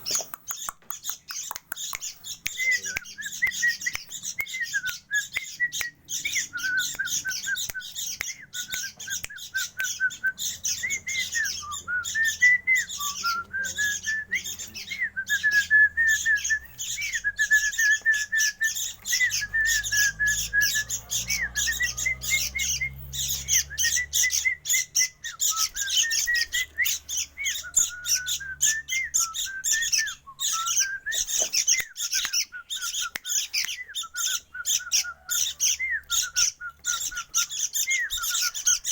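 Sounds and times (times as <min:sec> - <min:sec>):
whistled warble: 0:02.5 - 0:38.9
bird chirping high notes: 0:15.6 - 0:38.9.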